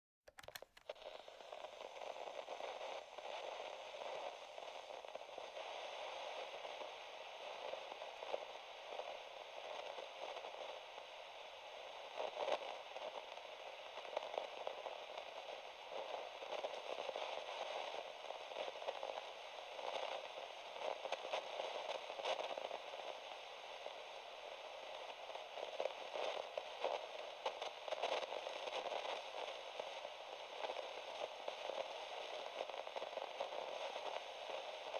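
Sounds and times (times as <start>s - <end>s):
static crackles and pops: 0.2s - 34.9s
radio static hiss: 0.4s - 34.9s.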